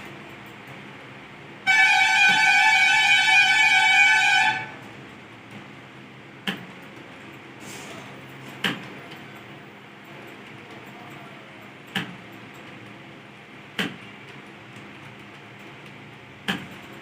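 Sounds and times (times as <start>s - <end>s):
loud steady tone: 1.4s - 5.4s.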